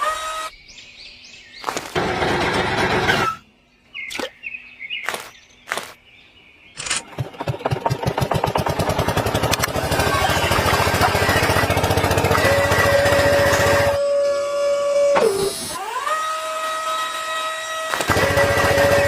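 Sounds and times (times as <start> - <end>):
small engine putter: 1.7 - 3.4, 6.8 - 19.0
sharp clicks: 6.8 - 7.2.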